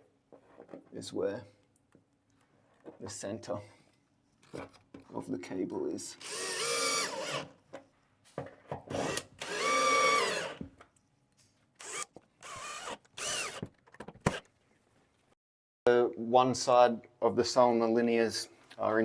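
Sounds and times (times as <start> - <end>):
power drill motor whine: 6.2 - 7.4, 8.9 - 10.6, 11.8 - 14.4.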